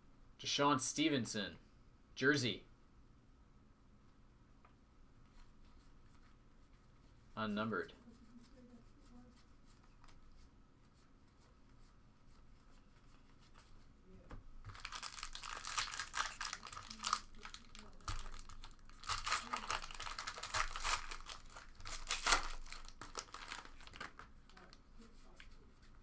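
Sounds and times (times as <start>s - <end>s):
plastic wrapper tearing and crinkling: 14.7s - 24.8s.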